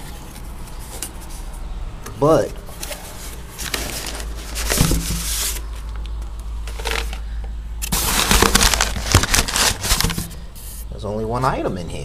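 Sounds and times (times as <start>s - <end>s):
cardboard box being opened: 2.8s - 5.7s, 6.7s - 7.2s, 7.8s - 10.3s
packing material rustling: 2.8s - 6.0s, 6.7s - 10.4s.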